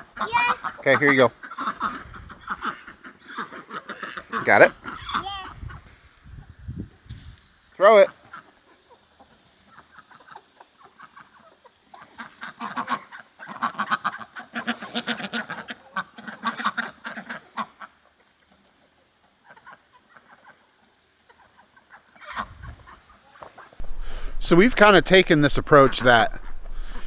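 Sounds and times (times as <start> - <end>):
chickens clucking: 0.0 - 5.8, 23.8 - 27.0.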